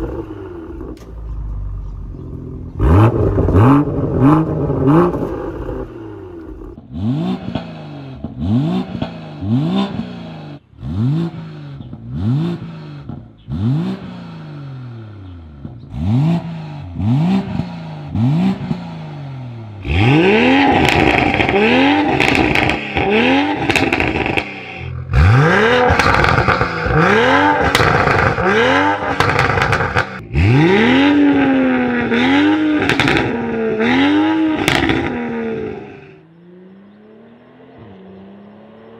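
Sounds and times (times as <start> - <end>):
car engine revving: 0.0 - 38.9
exhaust crackles and pops: 20.6 - 30.3, 30.9 - 35.3.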